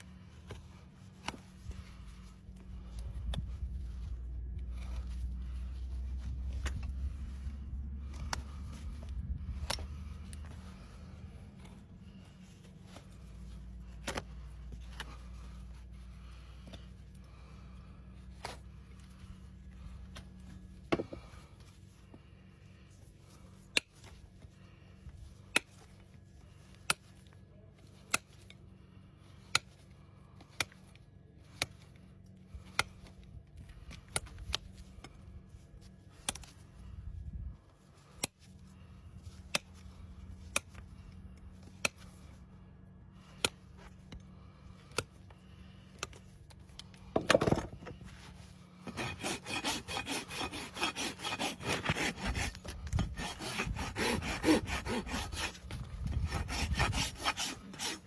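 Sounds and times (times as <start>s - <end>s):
low steady hum: 0.0s - 58.0s
rasp scraping hoof: 47.2s - 58.0s.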